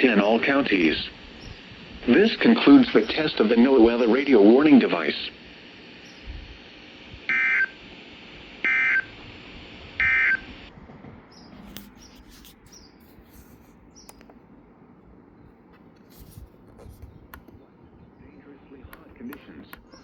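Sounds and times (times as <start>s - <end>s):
buzzing data bursts: 0.0s - 10.7s
radio hiss: 0.0s - 10.7s, 11.5s - 20.0s
clicks: 11.7s - 14.4s, 18.8s - 20.0s.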